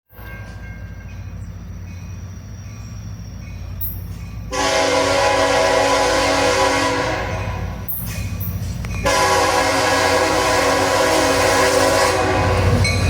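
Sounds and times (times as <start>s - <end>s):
diesel locomotive rumbling: 0.1s - 13.0s
locomotive air horn blast: 4.5s - 7.8s, 9.0s - 12.8s.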